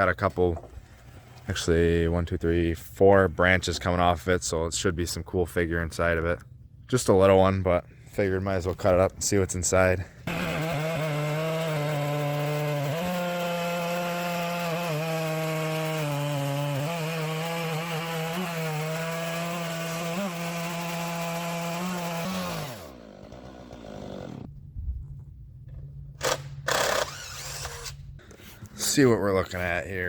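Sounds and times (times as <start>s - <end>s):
chainsaw cutting through log: 10.2s - 24.5s, 26.2s - 28.0s.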